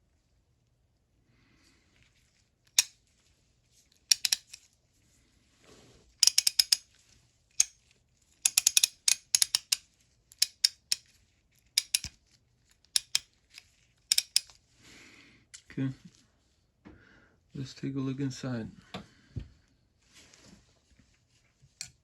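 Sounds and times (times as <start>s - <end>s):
ratchet clicking: 4.1s - 4.6s, 6.2s - 6.8s, 8.4s - 9.8s, 10.4s - 11.1s, 11.8s - 12.1s, 13.0s - 13.2s, 14.1s - 14.5s.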